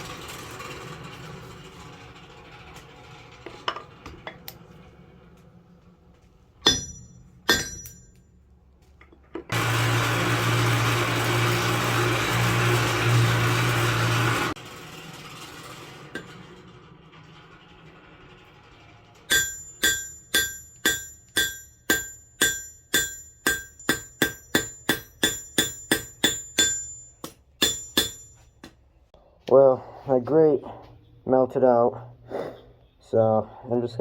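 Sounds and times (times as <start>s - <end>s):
electric forge blower humming: 0.0s - 8.2s, 9.5s - 28.3s.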